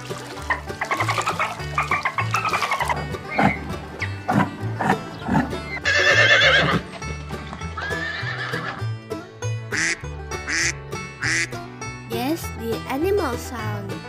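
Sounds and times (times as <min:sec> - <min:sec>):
background music with bass line: 0:00.0 - 0:14.0
horse neighing: 0:04.3 - 0:07.0, 0:07.7 - 0:08.8.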